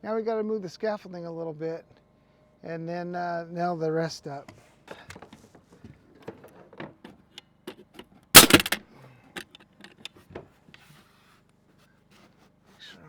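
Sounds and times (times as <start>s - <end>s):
scaffolding clattering rattle: 8.4s - 8.8s.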